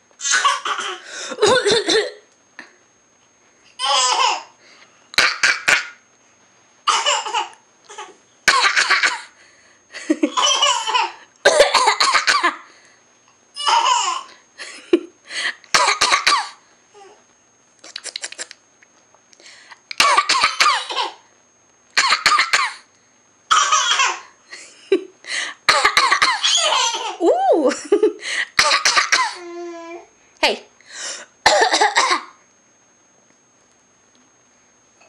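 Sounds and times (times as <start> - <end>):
forced coughing: 0.2 - 2.2, 8.5 - 9.4, 11.4 - 12.6, 15.7 - 16.6, 22.0 - 22.9, 25.7 - 26.4, 28.6 - 29.4, 31.4 - 32.3
laughter: 9.9 - 10.4, 27.7 - 28.2.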